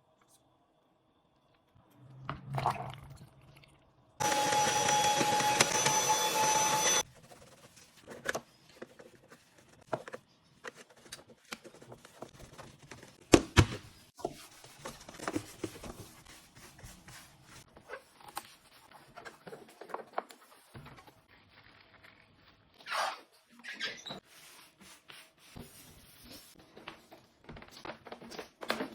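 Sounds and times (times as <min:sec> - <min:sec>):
coffee machine humming: 0:04.2 - 0:07.0.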